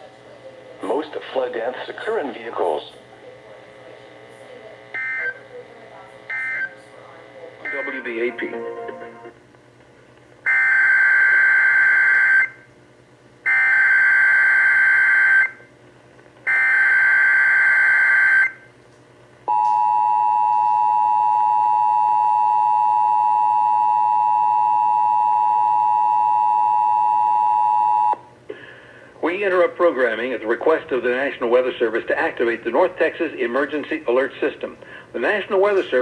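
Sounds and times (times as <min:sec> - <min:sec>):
data burst tones: 0:07.6 - 0:09.4
two-tone attention signal: 0:07.6 - 0:09.4, 0:19.5 - 0:28.2.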